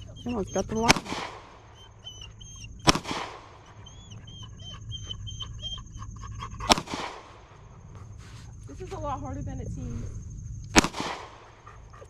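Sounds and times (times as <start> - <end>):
dog panting: 0.0 - 2.8, 3.4 - 9.2, 11.3 - 12.0
gunshots: 0.8 - 1.7, 2.8 - 3.6, 6.7 - 7.6, 10.7 - 11.6.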